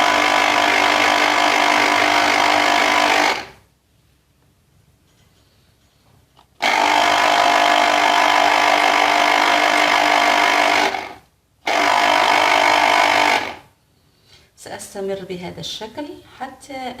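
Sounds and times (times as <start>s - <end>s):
electric juicer motor running: 0.0s - 3.6s, 6.6s - 13.7s.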